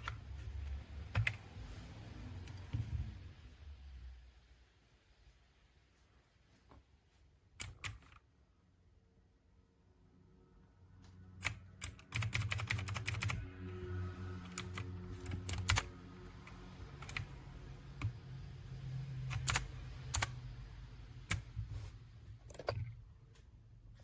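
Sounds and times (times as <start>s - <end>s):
mechanical keyboard typing: 1.0s - 1.5s, 7.6s - 8.2s, 11.4s - 13.7s, 14.4s - 18.2s, 19.2s - 20.4s, 21.2s - 21.7s.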